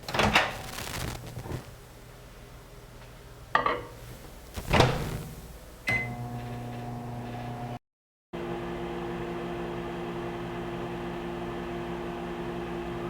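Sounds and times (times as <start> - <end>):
microwave humming: 0.0 - 7.8, 8.4 - 13.0
microwave beep: 5.9 - 7.7.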